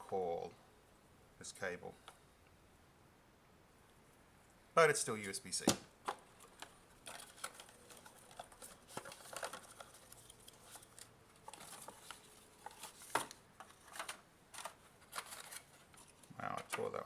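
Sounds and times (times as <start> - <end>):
packaging rustling: 6.1 - 17.0.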